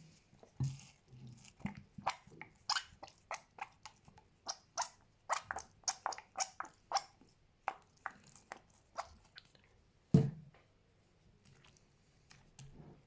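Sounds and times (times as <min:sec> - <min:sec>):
slime squelch: 0:00.0 - 0:09.8.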